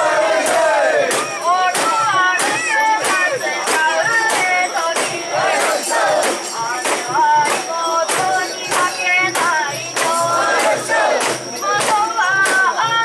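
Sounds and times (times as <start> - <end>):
crowd chanting and shouting: 0.0 - 13.0
rhythmic sharp strikes: 0.0 - 13.0.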